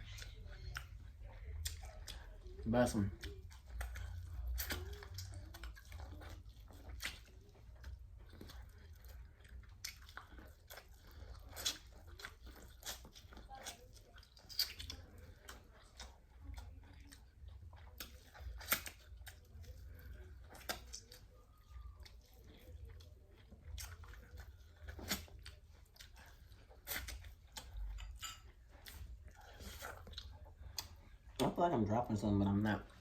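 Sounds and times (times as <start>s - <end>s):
low steady hum: 0.0s - 33.0s
person chewing food: 0.0s - 33.0s.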